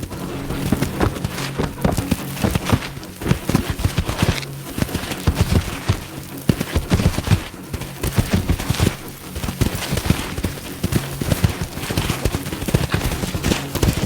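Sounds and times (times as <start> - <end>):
low musical drone: 0.0 - 12.6
galloping hoofbeats: 0.0 - 14.0.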